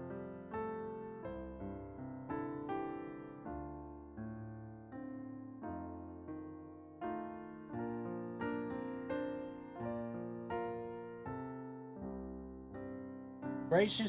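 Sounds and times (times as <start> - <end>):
soft piano chords: 0.0 - 14.0.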